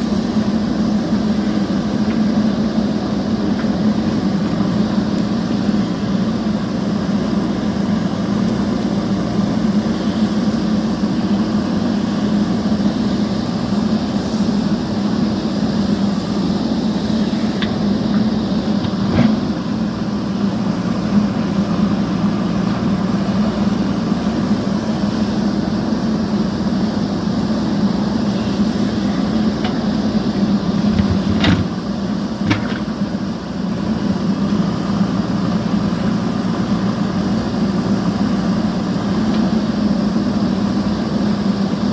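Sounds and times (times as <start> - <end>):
diesel engine running: 0.0 - 41.9.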